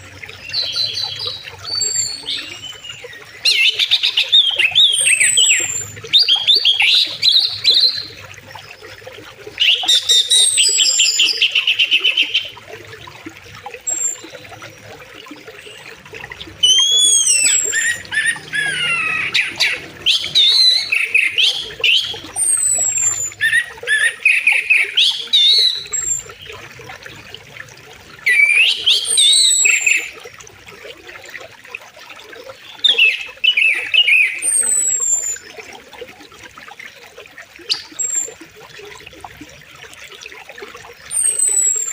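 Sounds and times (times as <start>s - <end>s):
songbirds chirping and trilling: 0.0s - 35.6s
river water flowing: 0.0s - 41.9s.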